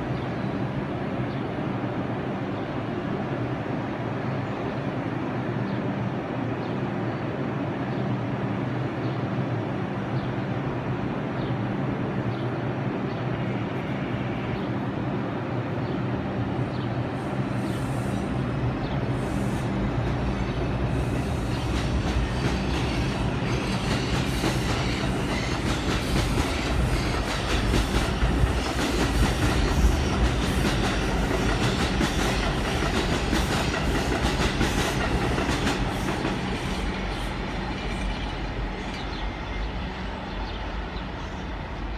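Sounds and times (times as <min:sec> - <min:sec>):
subway train electric hum: 0:00.0 - 0:41.9.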